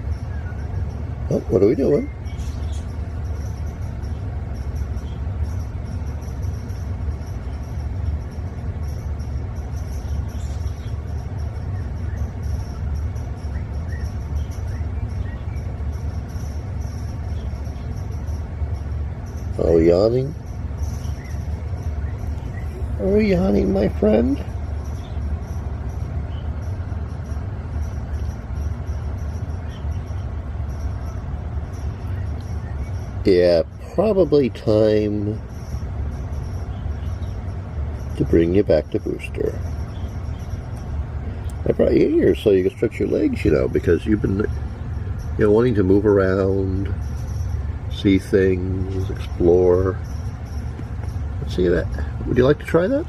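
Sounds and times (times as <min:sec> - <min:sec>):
faint high chirps: 0:00.0 - 0:52.6
steady low hum: 0:00.0 - 0:53.0
steady low rumble: 0:00.0 - 0:53.0
faint high ticks: 0:31.7 - 0:33.0.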